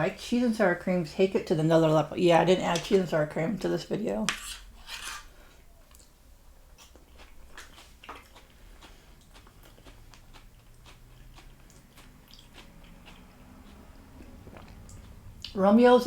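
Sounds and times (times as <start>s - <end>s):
person chewing crunchy food: 6.7s - 15.6s.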